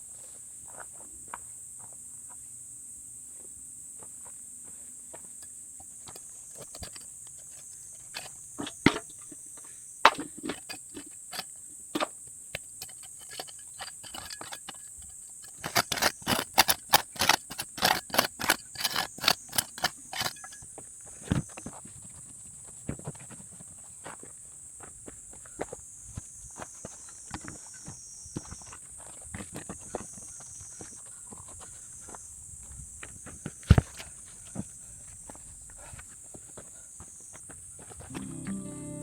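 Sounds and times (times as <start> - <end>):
insects trilling: 0.7 - 23.3, 24.0 - 33.6, 35.8 - 39.0
stones knocking and scraping: 10.1 - 20.6.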